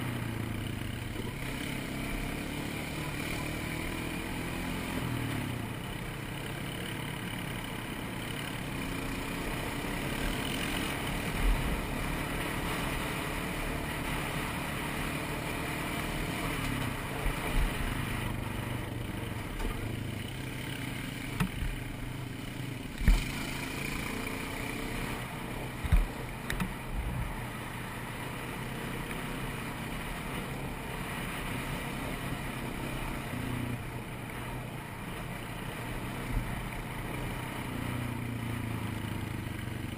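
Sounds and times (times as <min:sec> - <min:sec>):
quad bike engine running: 0:00.0 - 0:39.9
short thumps: 0:23.0 - 0:23.2, 0:25.8 - 0:27.2.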